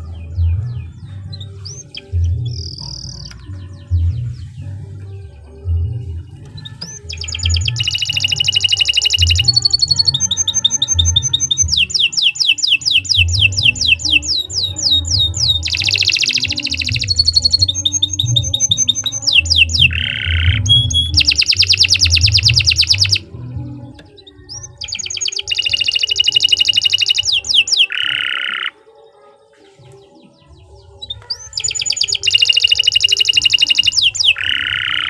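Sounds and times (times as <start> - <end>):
canary singing: 0.0 - 35.0.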